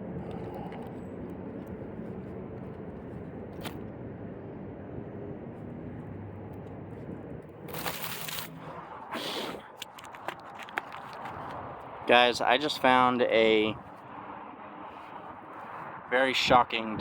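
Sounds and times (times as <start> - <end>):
rustling or scraping: 6.9 - 8.8.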